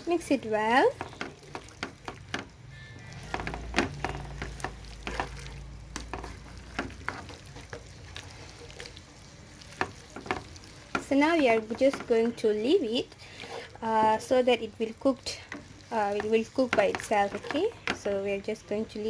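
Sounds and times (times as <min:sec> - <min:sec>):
spatula scraping frying pan: 0:00.0 - 0:18.4
food sizzling: 0:00.0 - 0:19.0.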